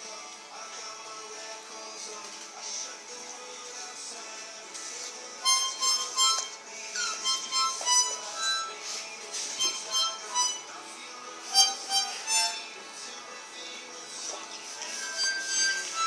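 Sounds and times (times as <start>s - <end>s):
harmonica playing a tune: 5.4s - 12.8s, 14.6s - 16.0s.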